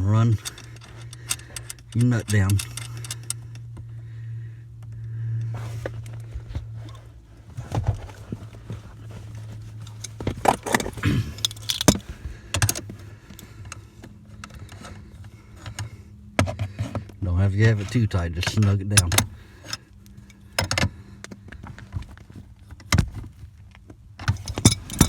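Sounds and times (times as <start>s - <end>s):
wrench clinking and rattling: 0.0s - 3.7s, 9.8s - 12.9s, 24.3s - 25.0s
steady low hum: 0.0s - 25.0s.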